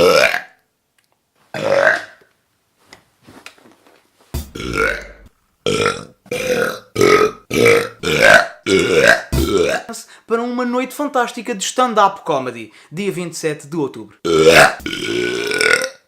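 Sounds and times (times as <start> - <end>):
man burping loudly: 0.0 - 0.6, 1.6 - 2.2, 4.4 - 9.9, 14.2 - 16.0.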